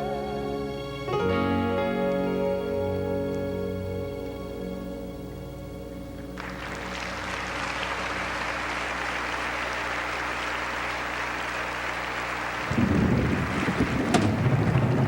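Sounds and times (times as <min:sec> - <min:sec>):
audience applauding: 0:06.4 - 0:15.0.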